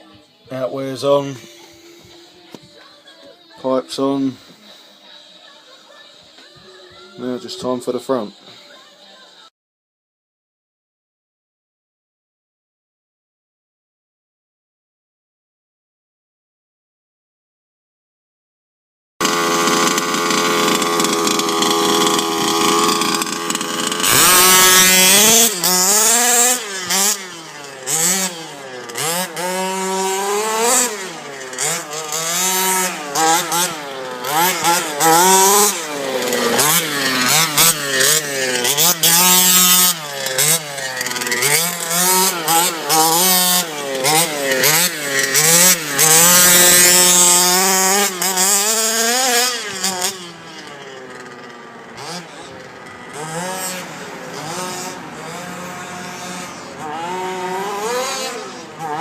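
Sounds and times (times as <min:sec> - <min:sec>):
small two-stroke engine revving: 0:19.2 - 0:59.0.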